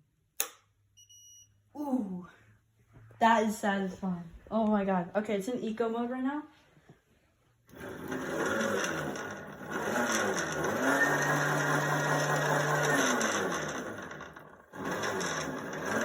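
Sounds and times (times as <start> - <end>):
electric motorbike motor whining: 7.7 - 16.0.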